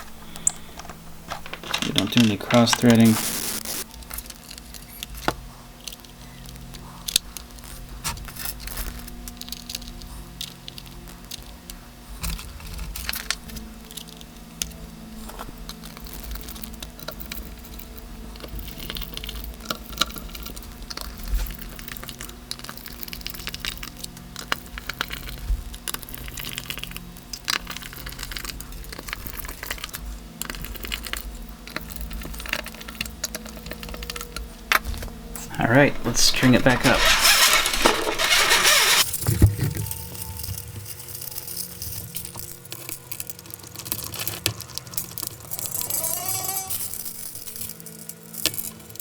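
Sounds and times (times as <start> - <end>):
light metal clicks and scrapes: 34.8 - 43.2.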